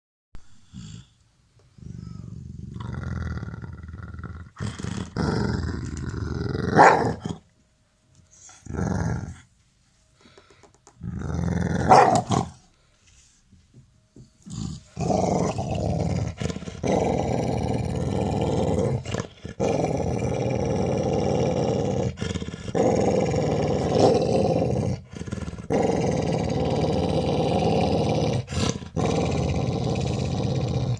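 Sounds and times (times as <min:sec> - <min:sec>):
dog growling: 0:01.8 - 0:07.4, 0:08.5 - 0:09.5, 0:11.0 - 0:12.6, 0:14.4 - 0:30.9.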